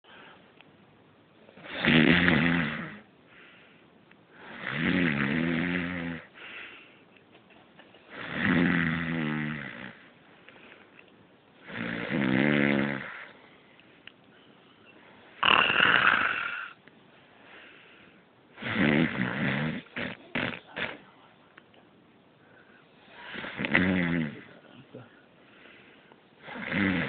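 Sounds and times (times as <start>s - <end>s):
quiet breathing: 0.0s - 0.6s, 3.2s - 4.7s, 6.2s - 7.2s, 9.9s - 11.1s, 13.0s - 15.4s, 16.3s - 18.5s, 20.2s - 23.6s, 24.4s - 26.7s
man snoring loudly: 1.6s - 3.0s, 4.4s - 6.3s, 8.1s - 10.0s, 11.7s - 13.3s, 15.4s - 16.8s, 18.6s - 20.6s, 23.3s - 24.5s, 26.4s - 27.0s.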